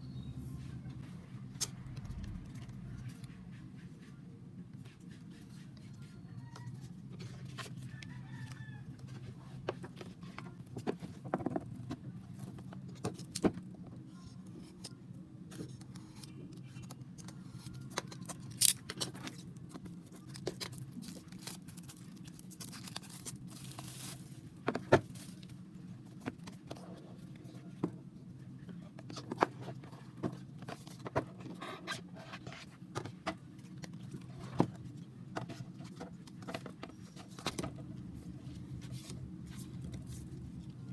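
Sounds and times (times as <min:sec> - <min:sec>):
steady low hum: 0:00.0 - 0:06.2
packaging clicks taps and rustles: 0:15.6 - 0:26.7.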